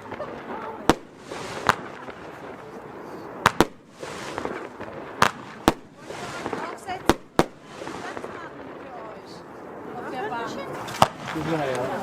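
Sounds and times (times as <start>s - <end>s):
firework reports: 0.0s - 12.0s
hiss of burning fireworks: 0.0s - 12.0s.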